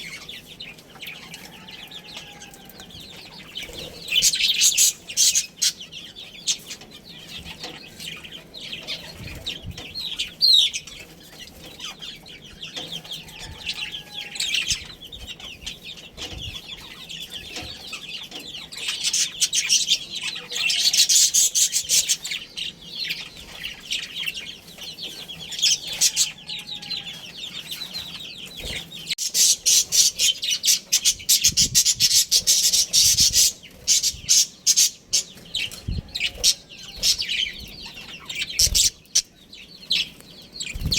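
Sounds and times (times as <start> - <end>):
budgerigars chattering and chirping: 0.0 - 40.9.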